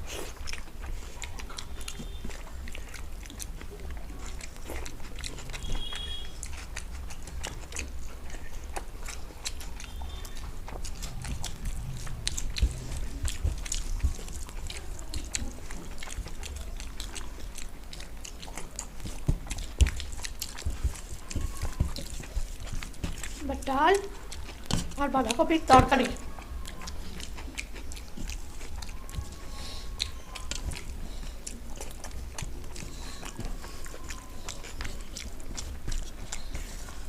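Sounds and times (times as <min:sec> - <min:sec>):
people chewing food: 0:00.0 - 0:37.0
low hum: 0:10.7 - 0:14.5.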